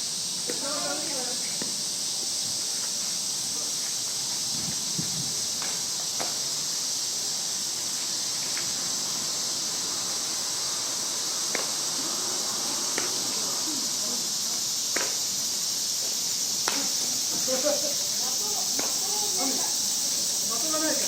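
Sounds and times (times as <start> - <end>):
insects chirping: 0.0 - 21.0
bats hitting balls: 5.6 - 6.5, 11.4 - 11.9, 12.9 - 13.3, 14.9 - 15.4, 16.0 - 17.1, 18.7 - 19.3.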